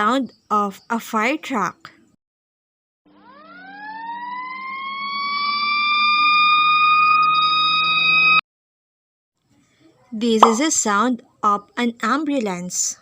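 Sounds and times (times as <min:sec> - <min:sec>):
fire truck siren winding up: 0:03.1 - 0:08.4.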